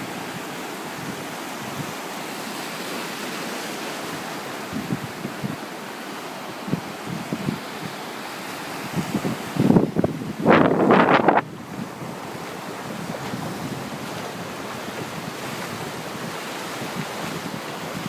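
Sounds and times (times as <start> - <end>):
wind buffeting the microphone: 0.0 - 2.0, 4.1 - 5.8, 6.5 - 8.1, 8.7 - 18.0
surf at the shore: 0.0 - 18.0.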